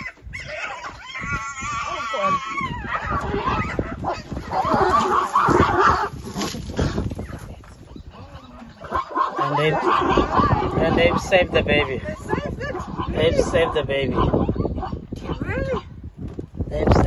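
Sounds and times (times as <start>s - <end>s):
zebra screaming: 0.0s - 7.0s, 8.2s - 15.8s
overlapping animal calls: 0.0s - 15.8s.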